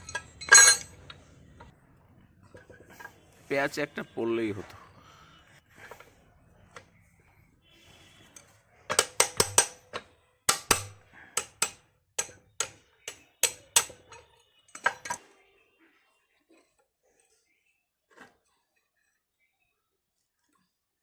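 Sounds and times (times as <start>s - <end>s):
metal tools tapping metal: 0.0s - 1.7s, 8.3s - 15.2s.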